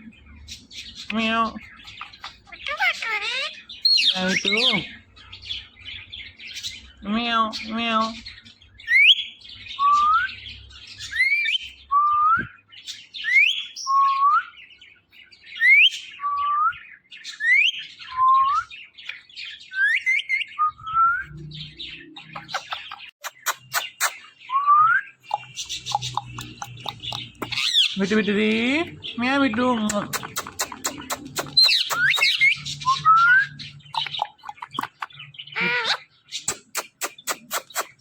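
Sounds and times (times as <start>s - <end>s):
sharp clicks: 29.9s - 32.4s.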